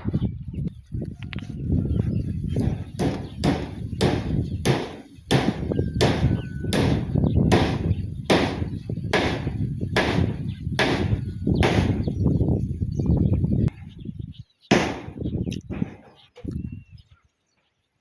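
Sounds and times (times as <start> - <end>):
sharp strikes: 14.7 - 15.2.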